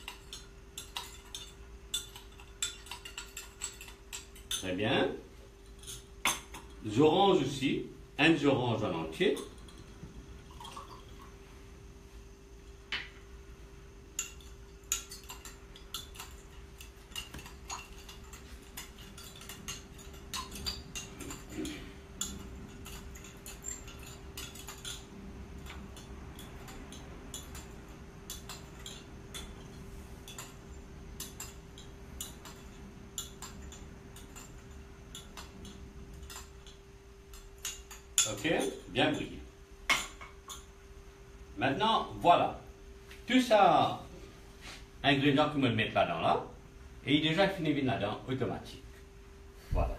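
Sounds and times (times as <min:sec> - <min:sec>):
utensils clinking against dishes: 0:00.0 - 0:06.9, 0:08.9 - 0:11.3, 0:14.1 - 0:40.7
steady low hum: 0:00.0 - 0:49.9.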